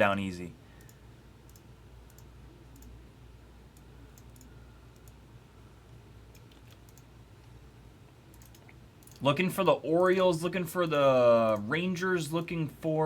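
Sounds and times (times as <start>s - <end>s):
low steady hum: 0.0s - 13.0s
faint computer clicks: 0.8s - 3.0s, 3.7s - 5.2s, 6.3s - 7.6s, 8.3s - 9.3s.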